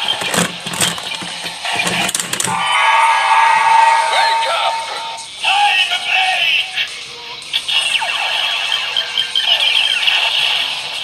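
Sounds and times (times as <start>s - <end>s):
electronic toy music: 2.6s - 11.0s.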